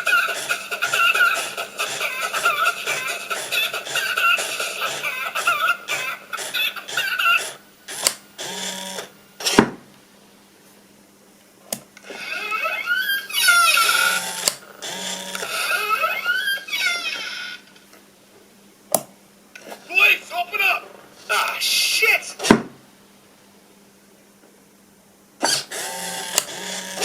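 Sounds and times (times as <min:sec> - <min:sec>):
sharp clicks: 0:07.9 - 0:08.2.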